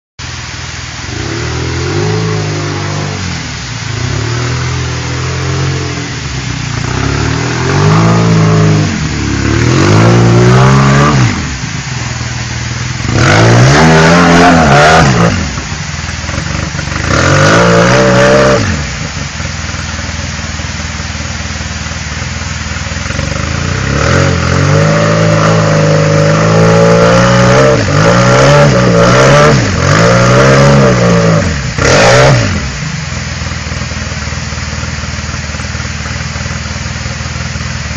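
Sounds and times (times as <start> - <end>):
engine revving hard: 0.4 - 19.4, 22.8 - 33.0.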